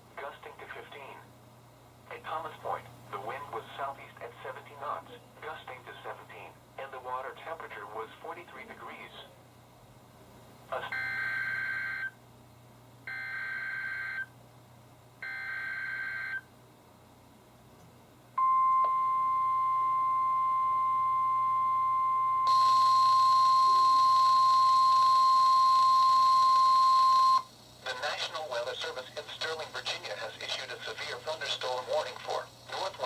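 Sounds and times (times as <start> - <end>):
steady warning alarm tone: 10.8 - 12.2, 13.1 - 14.3, 15.2 - 16.5, 18.4 - 27.5.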